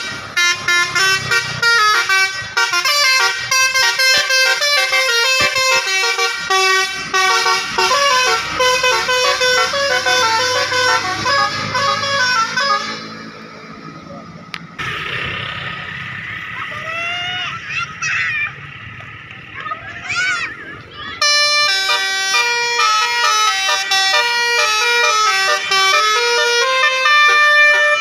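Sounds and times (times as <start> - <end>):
multi-tone bus air horn melody: 0.0 - 13.5, 21.2 - 28.0.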